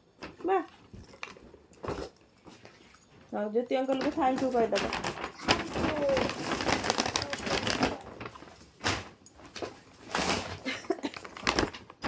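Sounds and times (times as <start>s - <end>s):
gift packaging rustling: 3.8s - 12.0s
faint voice: 5.4s - 8.2s.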